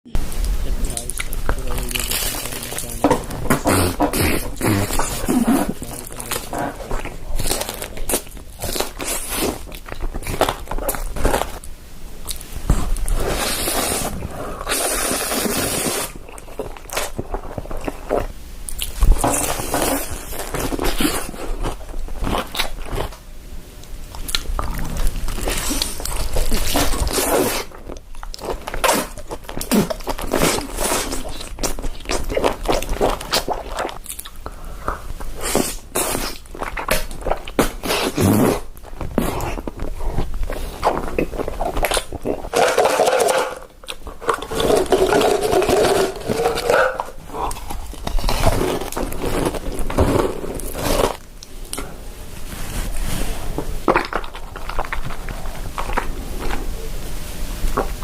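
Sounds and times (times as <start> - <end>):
crunchy chewing: 0.8 - 51.9, 52.6 - 56.7.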